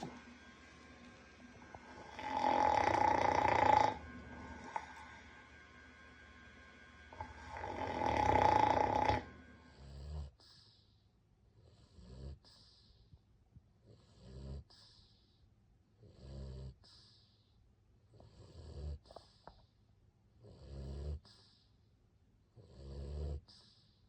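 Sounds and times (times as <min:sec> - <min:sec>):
pet snoring: 0:00.0 - 0:00.2, 0:01.7 - 0:05.3, 0:07.1 - 0:10.8, 0:11.5 - 0:12.9, 0:13.8 - 0:15.3, 0:16.0 - 0:17.4, 0:18.1 - 0:19.6, 0:20.4 - 0:21.7, 0:22.5 - 0:23.9.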